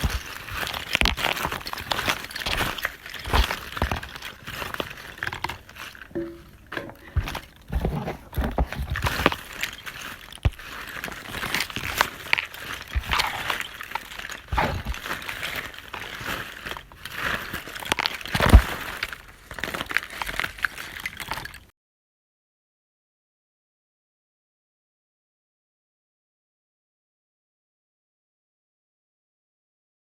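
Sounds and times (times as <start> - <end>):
objects knocking and clicking: 0.0 - 21.6
rustling: 0.0 - 21.6.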